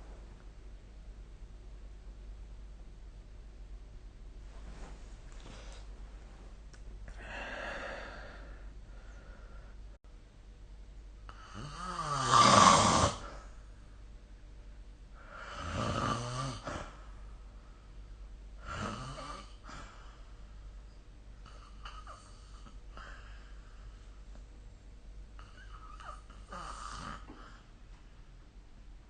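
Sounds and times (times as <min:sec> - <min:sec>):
person snoring: 0:11.3 - 0:13.5, 0:15.2 - 0:17.0, 0:18.6 - 0:20.0, 0:25.4 - 0:27.6.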